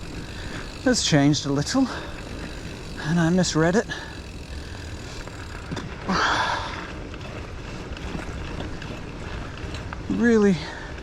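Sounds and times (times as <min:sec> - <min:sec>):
person sighing heavily: 0:06.1 - 0:06.9.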